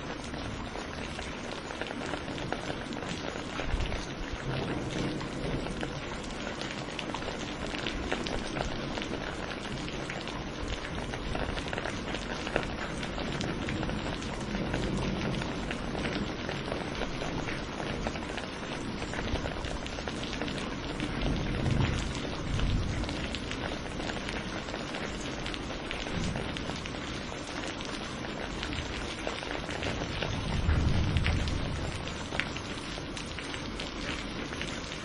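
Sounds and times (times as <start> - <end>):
heavy rain pattering: 0.0 - 35.0.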